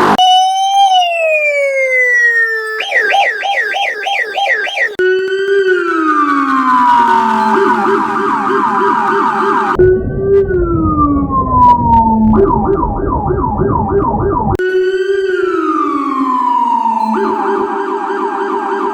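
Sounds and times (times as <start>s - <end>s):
police siren warbling and wailing: 0.0s - 18.9s
heavy distorted rumble: 9.8s - 14.6s.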